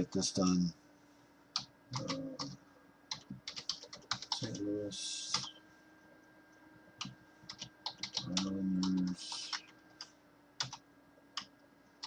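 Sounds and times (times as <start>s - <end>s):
keyboard typing: 1.6s - 4.6s, 5.3s - 5.5s, 7.0s - 10.0s, 10.6s - 10.8s.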